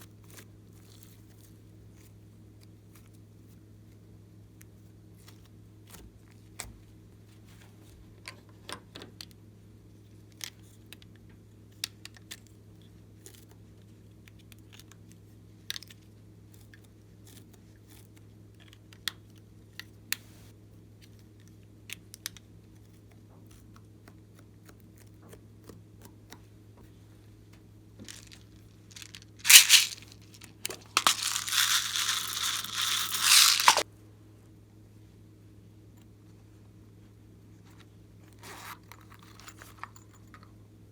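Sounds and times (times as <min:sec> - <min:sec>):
loud tearing rustling: 0:29.0 - 0:33.8.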